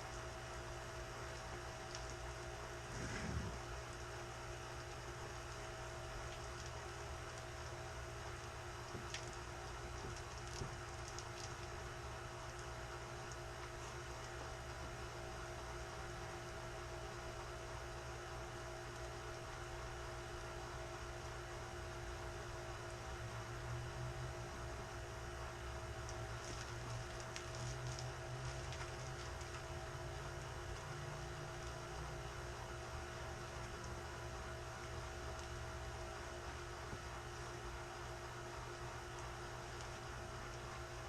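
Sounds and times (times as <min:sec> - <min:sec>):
faint steady hum: 0:00.0 - 0:41.0
low rumble: 0:02.8 - 0:03.7.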